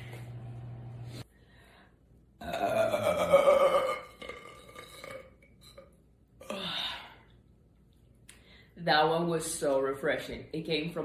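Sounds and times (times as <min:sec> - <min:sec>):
woman burping loudly: 0:02.4 - 0:05.4.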